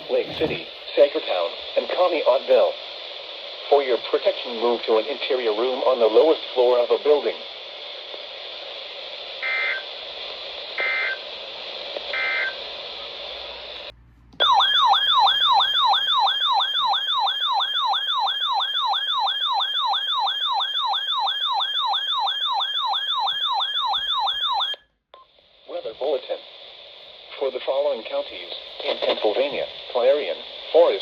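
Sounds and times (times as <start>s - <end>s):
radio hiss: 0.0s - 13.9s, 25.3s - 31.0s.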